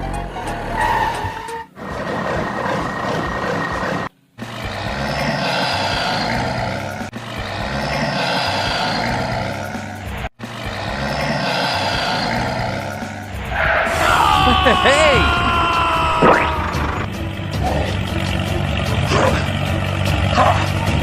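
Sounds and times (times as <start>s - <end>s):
vehicle engine running: 1.7s - 13.8s, 16.6s - 21.0s.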